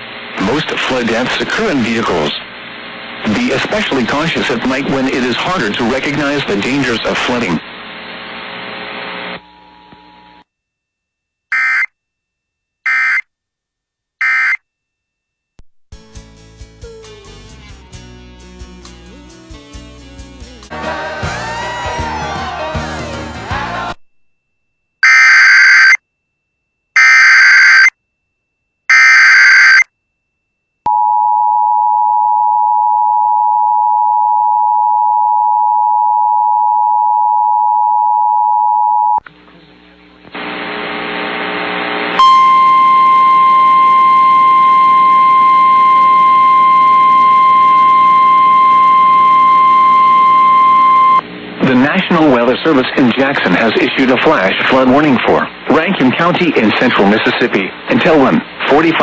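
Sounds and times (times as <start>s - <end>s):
radio hum: 0.0s - 10.1s, 25.0s - 26.0s, 27.0s - 27.9s, 28.9s - 29.8s, 39.2s - 59.0s
digital header tones: 11.5s - 11.9s, 12.9s - 13.2s, 14.2s - 14.6s, 25.0s - 26.0s, 27.0s - 27.9s, 28.9s - 29.9s
warning alarm tone: 11.5s - 11.9s, 12.9s - 13.2s, 14.2s - 14.6s, 25.0s - 26.0s, 27.0s - 27.9s, 28.9s - 29.9s, 42.2s - 51.2s
two-tone attention signal: 11.6s - 11.9s, 14.2s - 14.6s, 25.0s - 26.0s, 27.0s - 27.9s, 28.9s - 29.9s, 42.2s - 51.2s.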